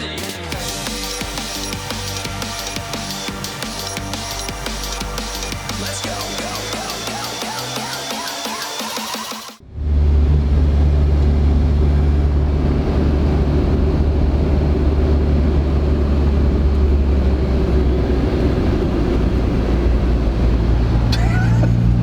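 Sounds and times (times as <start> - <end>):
car engine drone: 0.0 - 22.0
road noise inside car: 9.6 - 22.0.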